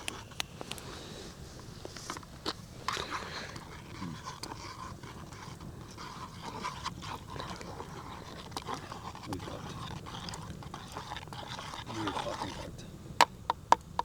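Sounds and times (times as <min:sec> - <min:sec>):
hot drink pouring: 0:03.0 - 0:12.7.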